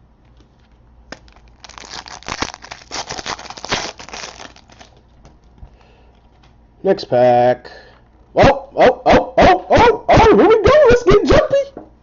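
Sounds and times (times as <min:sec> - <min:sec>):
foil wrapper crinkling: 0:01.1 - 0:05.6.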